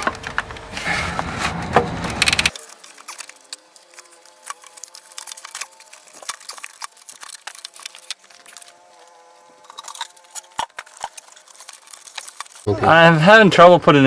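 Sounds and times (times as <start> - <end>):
metal parts clicking and knocking: 2.0 - 3.4.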